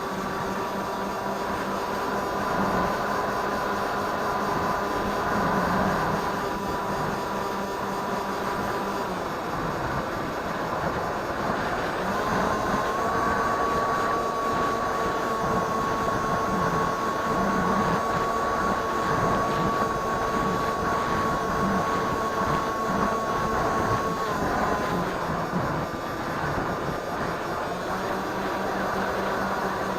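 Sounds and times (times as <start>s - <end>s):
electric motor and propeller whining: 0.0s - 29.9s
wind rush: 8.4s - 28.6s.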